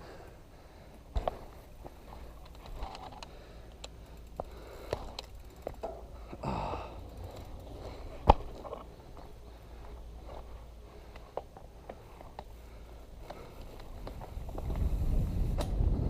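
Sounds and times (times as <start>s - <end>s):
person breathing hard: 0.0s - 2.4s, 3.2s - 15.0s
gear knocking and rustling: 1.1s - 15.6s
wind on microphone: 14.0s - 16.0s.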